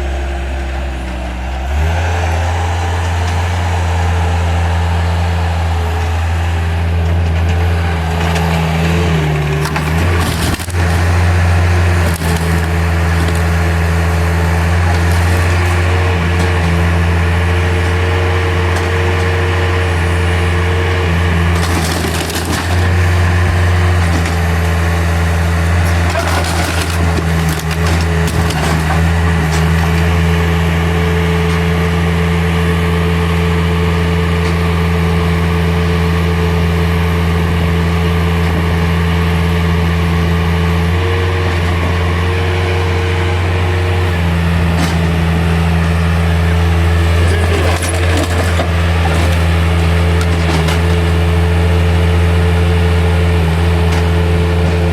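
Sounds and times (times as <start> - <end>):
diesel engine under load: 0.0 - 54.9
wood cracking and splintering: 7.3 - 32.0, 40.6 - 54.9.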